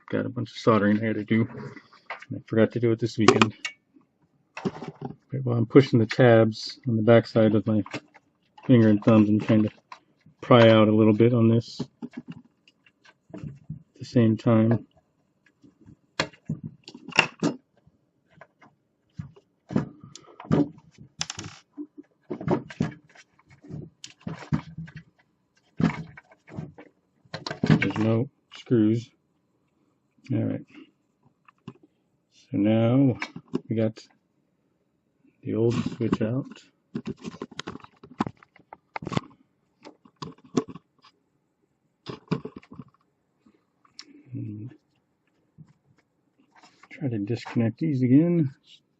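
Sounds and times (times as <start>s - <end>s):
plastic clicks and knocks: 3.2s - 3.8s, 11.8s - 13.9s, 18.3s - 28.1s, 37.0s - 41.1s.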